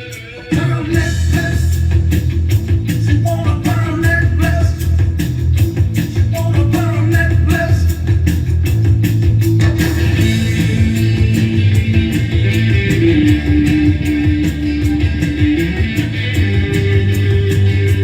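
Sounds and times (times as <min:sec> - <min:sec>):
electric guitar: 0:00.0 - 0:18.0
rock song: 0:00.0 - 0:18.0
person singing: 0:00.1 - 0:01.9, 0:03.1 - 0:05.0, 0:06.2 - 0:08.0.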